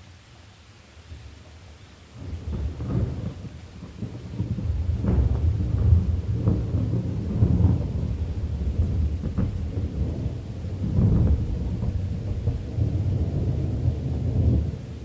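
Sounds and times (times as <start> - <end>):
steady rain: 0.0 - 15.0
thunder rumbling: 2.2 - 15.0.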